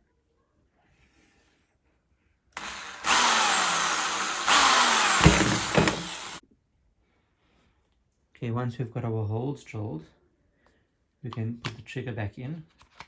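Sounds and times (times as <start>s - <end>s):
power drill boring: 2.6s - 6.4s
knocks: 5.2s - 6.2s.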